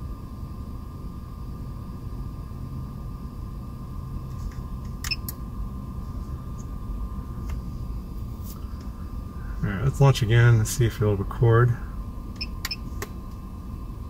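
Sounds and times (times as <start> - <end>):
faint steady whine: 0.0 - 14.0
low rumble: 0.0 - 14.0.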